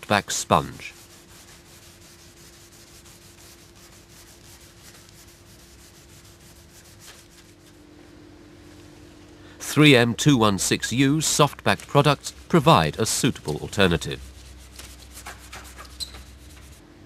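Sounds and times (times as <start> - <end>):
faint steady hum: 0.0 - 17.0
sponge rubbing strokes on panel: 0.2 - 7.8, 11.3 - 16.8.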